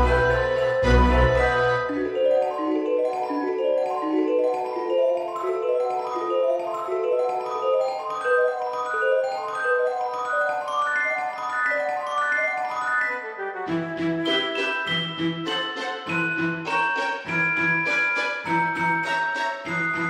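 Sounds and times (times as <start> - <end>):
mallet percussion melody: 0.0 - 20.0.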